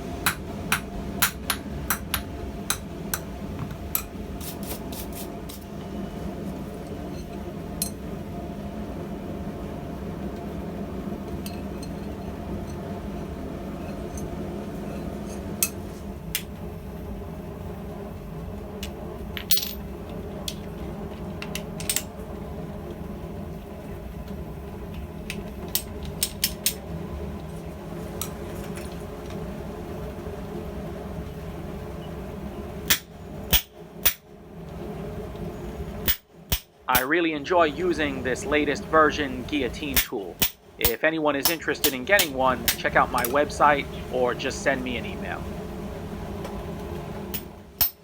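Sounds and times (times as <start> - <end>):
forge drone: 36.8 - 47.8.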